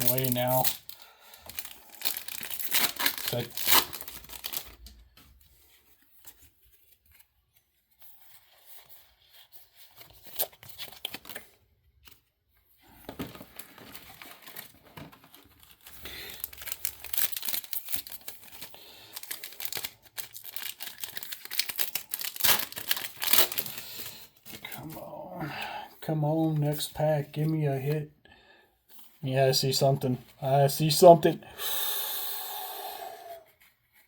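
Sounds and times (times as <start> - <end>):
foil wrappers crinkling and tearing: 0.0 - 5.2, 13.2 - 25.0.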